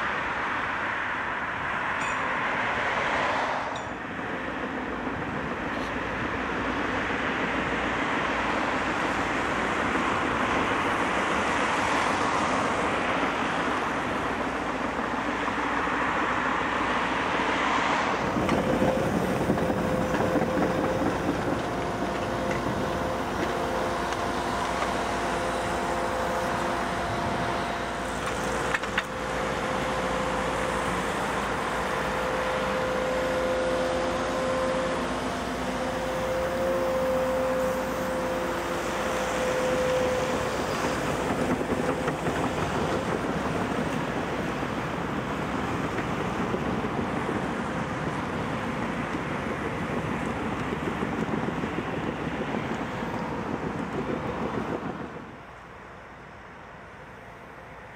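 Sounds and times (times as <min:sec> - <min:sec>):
excavator machine whine: 0:00.0 - 0:57.9
passing vehicle rushing: 0:00.6 - 0:03.8.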